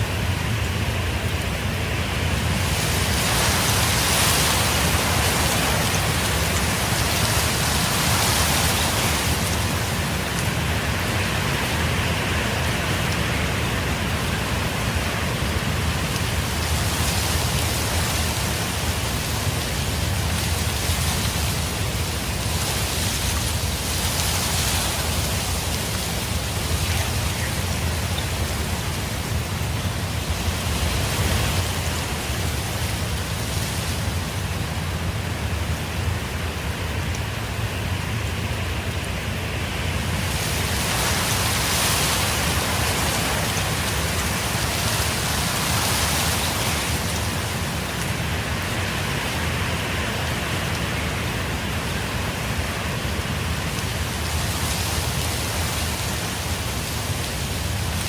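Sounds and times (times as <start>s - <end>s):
strong wind low rumble: 0.0s - 58.0s.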